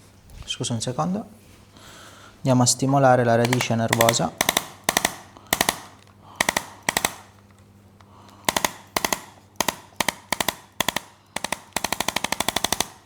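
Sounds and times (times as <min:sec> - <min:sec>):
faint steady hum: 0:00.0 - 0:13.0
mechanical instrument clicks: 0:03.3 - 0:13.0.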